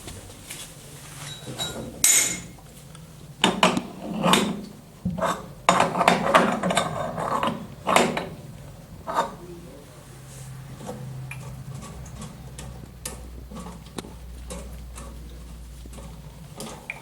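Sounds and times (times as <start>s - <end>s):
pipe fitting clicks and knocks: 3.4s - 8.4s, 10.8s - 17.0s.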